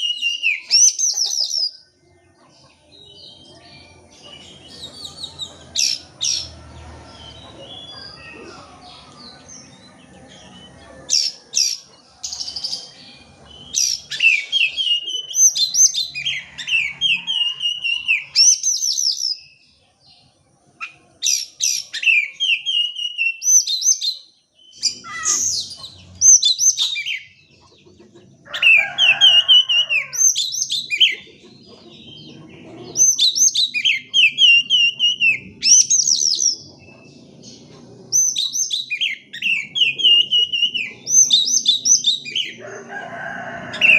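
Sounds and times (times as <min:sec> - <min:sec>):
bird singing whistled phrases: 0:00.0 - 0:01.7, 0:14.1 - 0:15.8, 0:21.9 - 0:24.2, 0:33.2 - 0:36.5, 0:38.2 - 0:42.2.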